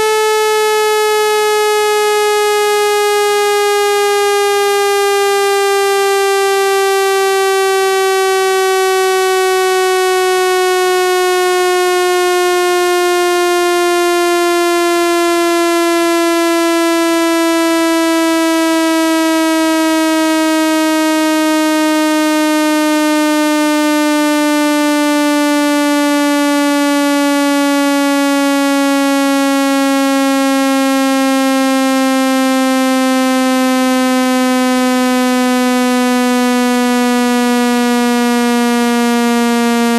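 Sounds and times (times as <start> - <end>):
buzzy synthesized falling tone: 14.2 - 39.9.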